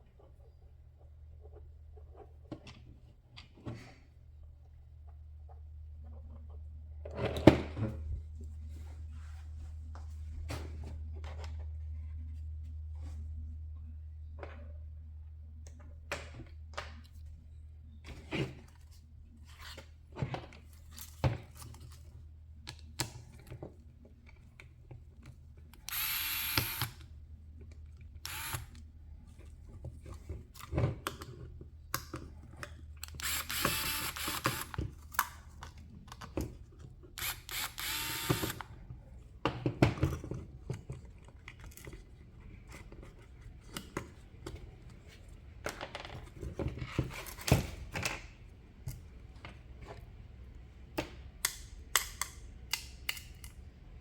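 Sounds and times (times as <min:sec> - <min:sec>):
electric screwdriver whirring: 0:25.8 - 0:27.0, 0:28.2 - 0:28.7, 0:33.1 - 0:34.8, 0:37.2 - 0:38.7.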